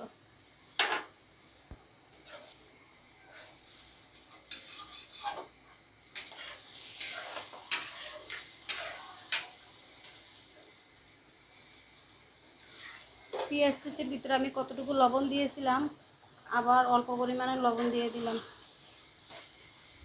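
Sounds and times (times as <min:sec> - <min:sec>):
light sizzle: 0:00.0 - 0:20.0
spatula scraping a pan: 0:02.1 - 0:10.4, 0:12.5 - 0:14.0, 0:17.6 - 0:20.0.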